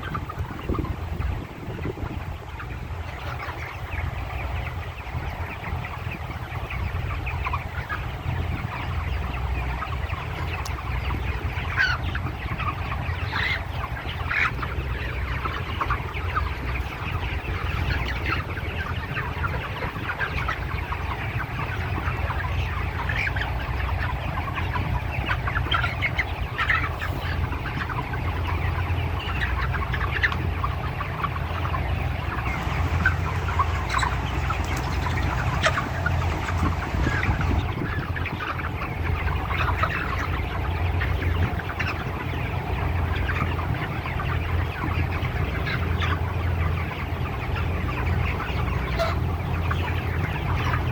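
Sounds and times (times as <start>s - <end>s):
chickens clucking: 0.0s - 50.9s
steady low hum: 26.3s - 44.7s.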